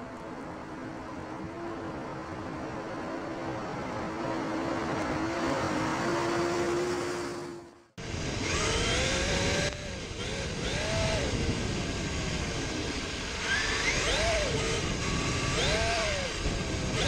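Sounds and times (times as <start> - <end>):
electric motor whining: 0.0 - 17.0.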